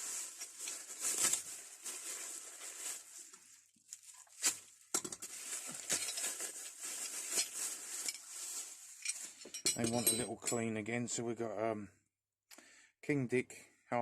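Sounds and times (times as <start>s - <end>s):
packaging rustling and crinkling: 0.0s - 9.6s.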